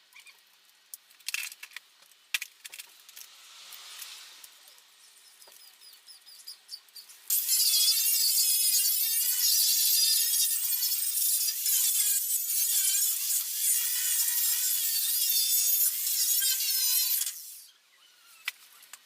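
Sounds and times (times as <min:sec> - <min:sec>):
angle grinder grinding steel: 0:07.3 - 0:17.5.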